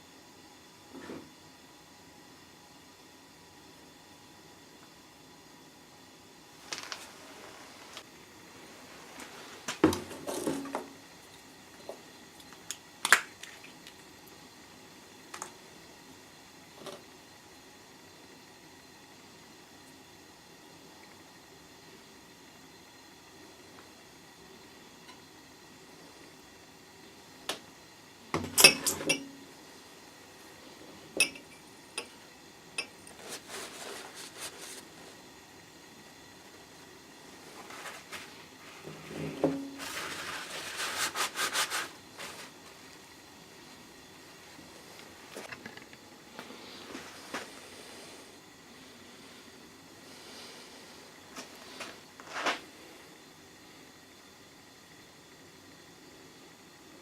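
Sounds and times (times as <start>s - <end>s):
soft scraping or rustling: 6.6s - 9.7s, 33.1s - 35.2s, 37.3s - 42.9s, 46.4s - 48.3s, 50.2s - 52.7s.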